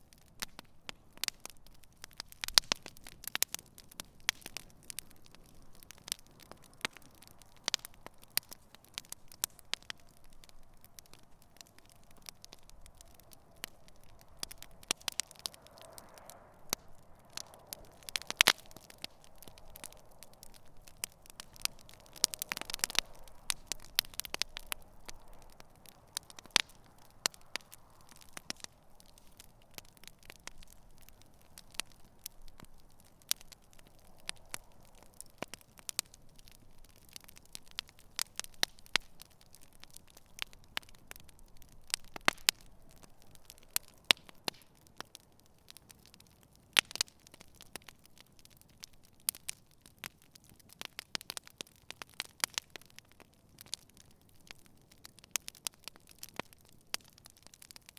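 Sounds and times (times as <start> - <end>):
campfire crackling and popping: 0.0 - 57.9
hiss of flames: 0.5 - 39.3.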